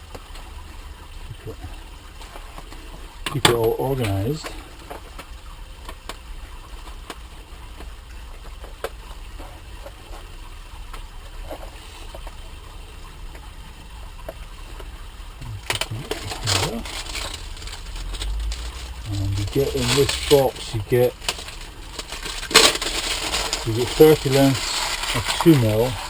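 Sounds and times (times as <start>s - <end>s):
low hum: 11.7s - 26.0s.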